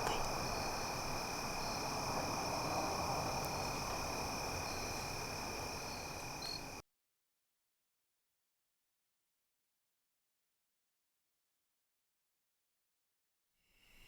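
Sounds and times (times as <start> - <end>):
crickets trilling: 0.0 - 6.8
low even hiss: 0.0 - 6.8.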